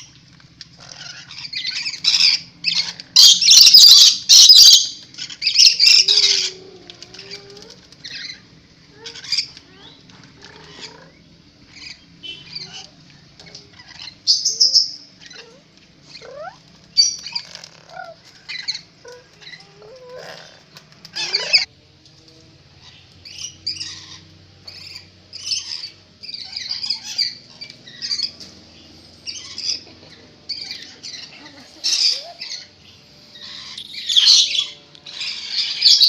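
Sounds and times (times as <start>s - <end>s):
parrot chattering and screeching: 0.0s - 21.7s, 22.8s - 36.0s.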